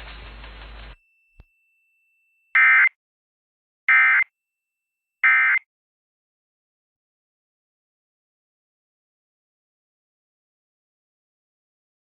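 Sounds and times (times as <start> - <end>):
digital data tone bursts: 5.2 - 5.6.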